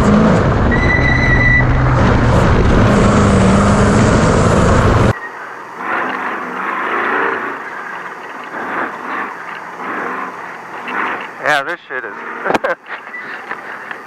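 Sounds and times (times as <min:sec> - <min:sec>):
truck engine over rough terrain: 0:00.0 - 0:14.0.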